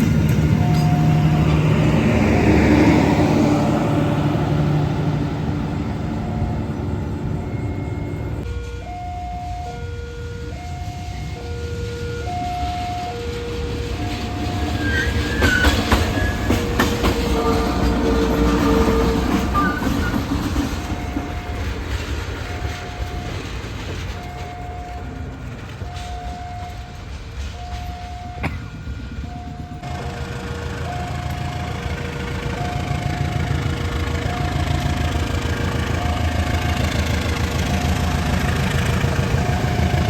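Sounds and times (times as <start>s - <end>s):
wheels clacking over rail joints: 0.0s - 8.9s, 12.5s - 40.0s
train rumbling past: 0.0s - 40.0s
two-tone level-crossing alarm: 0.5s - 1.7s, 6.1s - 25.2s, 25.8s - 30.1s, 30.7s - 35.1s
train horn: 14.7s - 20.3s.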